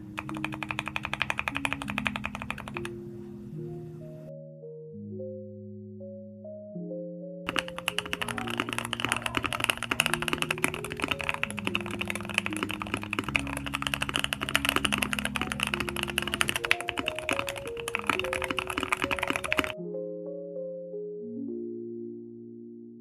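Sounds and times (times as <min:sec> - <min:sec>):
typing on mechanical keyboard: 0:00.0 - 0:02.9, 0:07.5 - 0:19.8
background music with mallet notes: 0:00.0 - 0:23.0.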